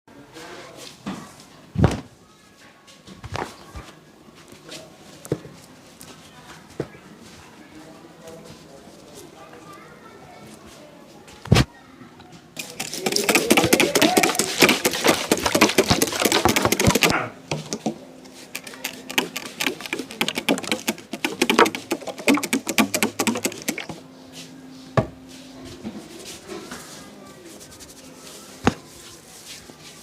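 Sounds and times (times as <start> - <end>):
hand tapping head massage: 12.6 - 17.8, 18.6 - 24.0.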